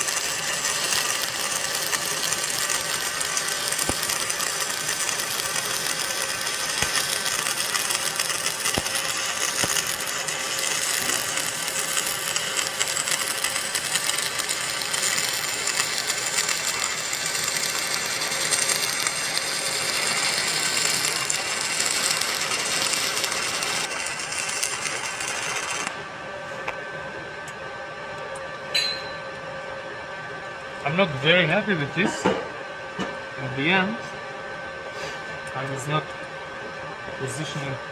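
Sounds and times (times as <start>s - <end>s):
welding arc crackling and hissing: 0.0s - 26.0s.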